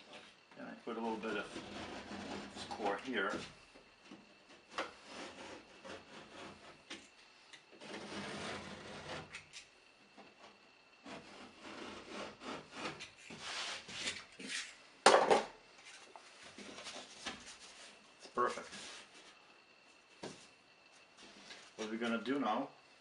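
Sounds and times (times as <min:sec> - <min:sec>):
drywall scraping and crumbling: 0:00.0 - 0:07.1, 0:07.8 - 0:09.6.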